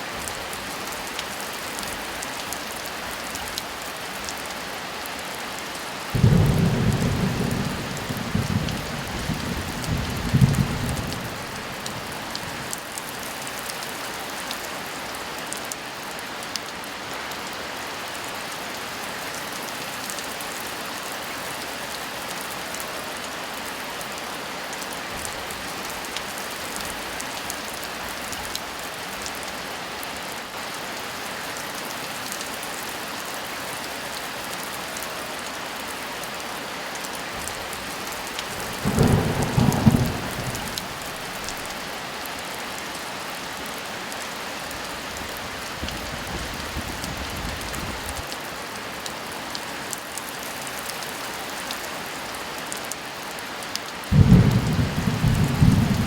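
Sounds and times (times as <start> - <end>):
heavy rain: 0.0 - 56.0
thunder rumble: 38.6 - 41.7, 54.1 - 56.0.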